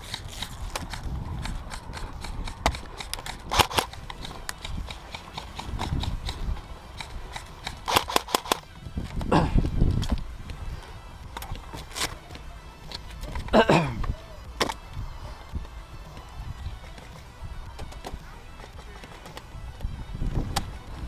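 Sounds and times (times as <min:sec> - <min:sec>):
airsoft gun bursts: 0:00.9 - 0:08.7
low rustling and rumbling: 0:08.7 - 0:12.0.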